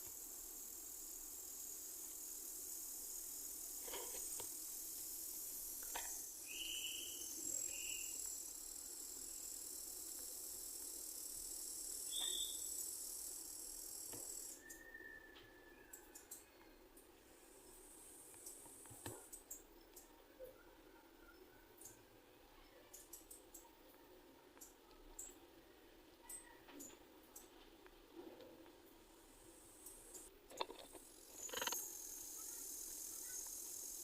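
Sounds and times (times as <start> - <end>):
insect chirring: 0.0 - 14.9, 17.6 - 20.1, 22.8 - 23.7, 24.6 - 25.4, 29.0 - 34.0.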